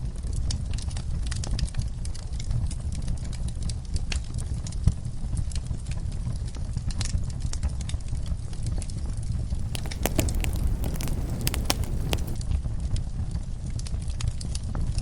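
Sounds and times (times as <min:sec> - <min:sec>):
wood fire crackling: 0:09.5 - 0:12.4.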